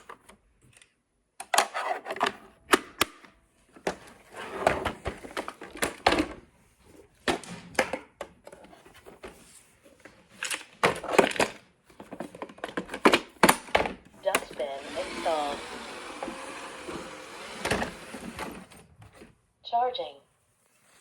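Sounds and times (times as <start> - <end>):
hard plastic clicking and clattering: 0.0 - 6.4, 7.2 - 9.4, 10.3 - 14.6.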